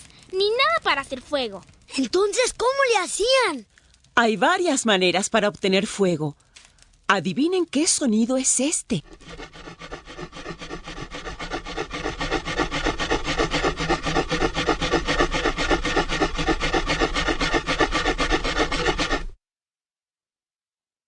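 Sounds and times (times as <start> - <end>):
wooden sticks scraping together: 9.0 - 19.3.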